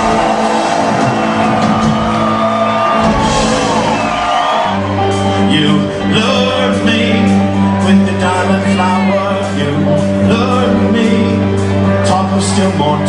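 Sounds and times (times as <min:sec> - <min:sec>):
rock band playing live: 0:00.0 - 0:13.0
strong bass line: 0:00.0 - 0:13.0
person singing: 0:04.6 - 0:13.0.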